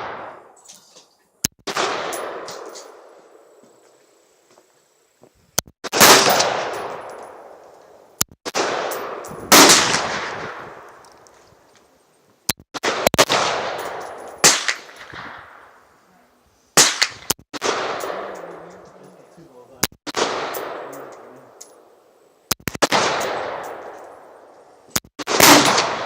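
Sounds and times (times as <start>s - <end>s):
rifle gunshots echoing: 0.0s - 0.5s, 1.7s - 3.4s, 5.9s - 11.0s, 12.8s - 15.8s, 16.8s - 18.9s, 20.1s - 22.0s, 22.8s - 24.5s, 25.2s - 26.0s.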